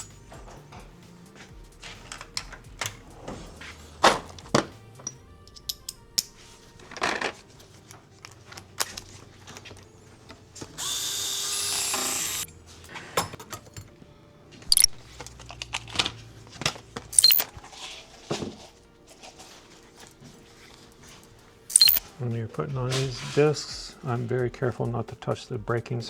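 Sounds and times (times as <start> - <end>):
tools clicking and knocking: 1.8 - 10.8, 11.9 - 14.0, 14.7 - 17.6, 21.7 - 22.1
power drill running: 10.6 - 12.5.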